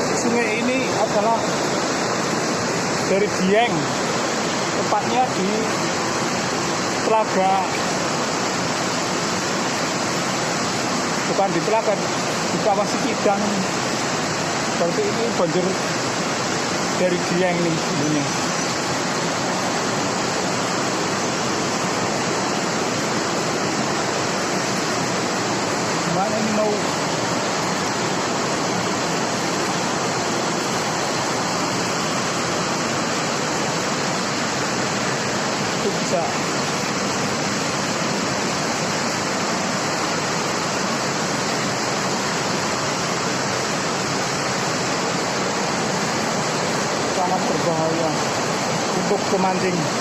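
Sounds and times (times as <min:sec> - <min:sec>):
floodwater rushing: 0:00.0 - 0:50.0.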